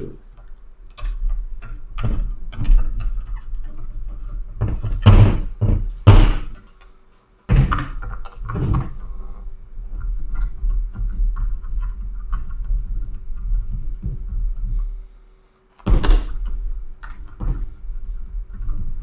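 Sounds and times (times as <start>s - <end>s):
plastic helmet knocks: 4.6s - 6.6s, 7.5s - 9.0s, 15.9s - 17.8s.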